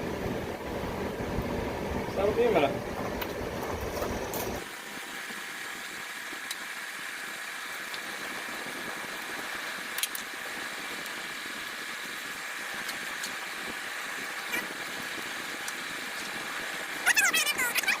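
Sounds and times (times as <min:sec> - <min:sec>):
fire popping: 0:00.2 - 0:18.0.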